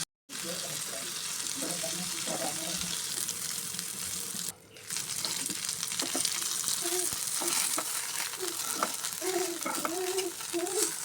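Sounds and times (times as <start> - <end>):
vegetables sizzling in oil: 0.3 - 11.0.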